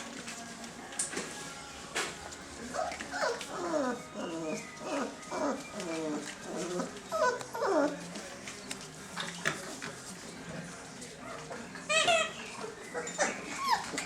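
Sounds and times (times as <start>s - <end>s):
puppies whimpering: 2.7s - 8.1s, 11.2s - 14.0s.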